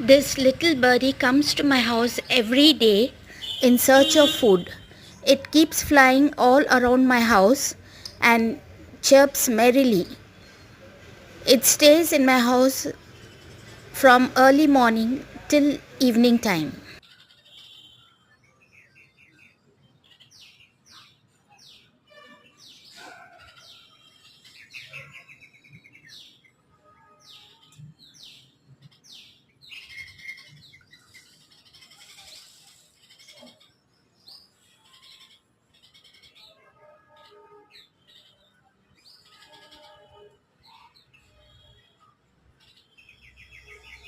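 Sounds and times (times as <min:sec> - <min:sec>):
small bird chirping: 0:11.5 - 0:44.0.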